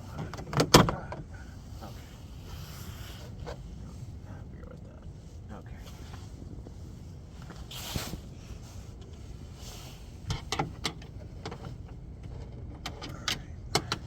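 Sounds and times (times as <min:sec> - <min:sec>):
steady low hum: 0:00.0 - 0:14.0
trim parts clicking and knocking: 0:10.3 - 0:14.0.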